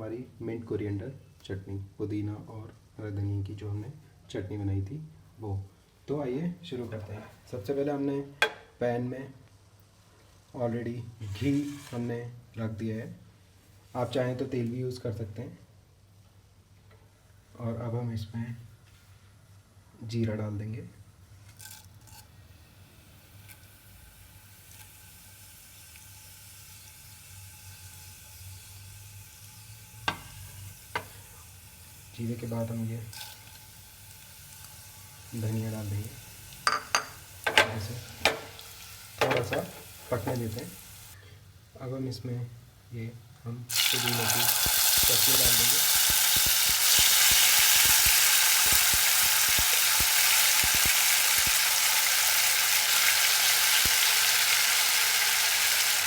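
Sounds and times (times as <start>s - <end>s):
seeds sizzling in oil: 11.2s - 12.4s, 21.3s - 56.0s.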